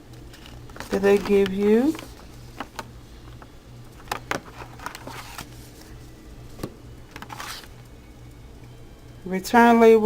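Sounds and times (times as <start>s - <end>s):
steady low hum: 0.0s - 10.0s
paper rustling: 0.4s - 3.4s, 4.0s - 6.1s, 7.2s - 7.8s.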